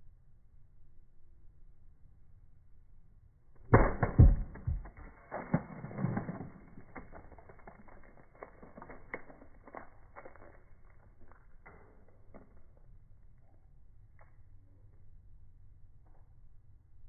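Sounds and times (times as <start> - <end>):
sledgehammer hits: 3.7 - 7.1
container cracking and spattering: 3.7 - 12.8.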